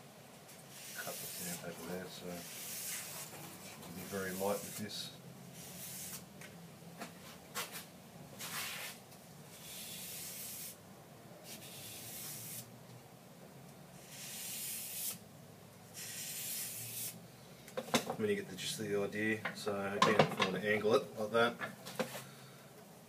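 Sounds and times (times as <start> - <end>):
knife scraping on sandpaper: 0.7 - 5.0, 5.6 - 6.2, 7.6 - 9.0, 9.6 - 10.8, 11.5 - 12.7, 14.0 - 15.2, 16.0 - 17.2.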